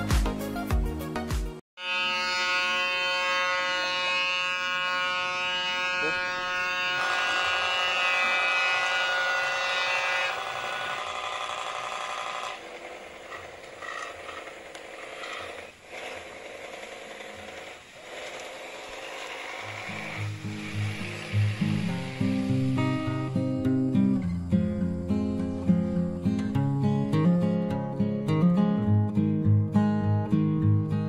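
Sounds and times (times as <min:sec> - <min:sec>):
toy steam boat buzzing rattle: 0:02.4 - 0:23.1.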